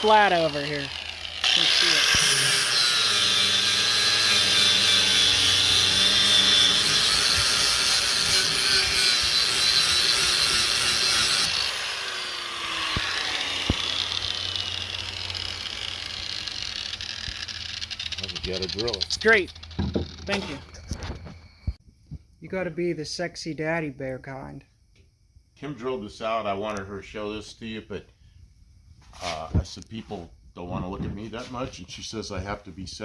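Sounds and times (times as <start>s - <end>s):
power drill cutting steel: 0.0s - 20.7s.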